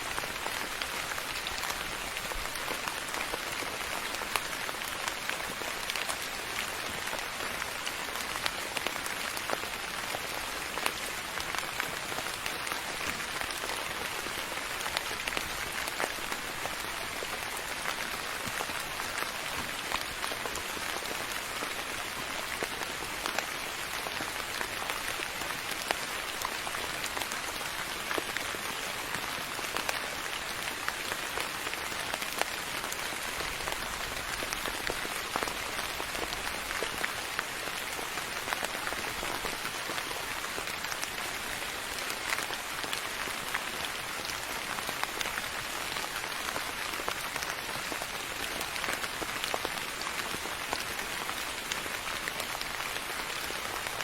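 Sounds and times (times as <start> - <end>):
soft rain falling: 0.0 - 54.0.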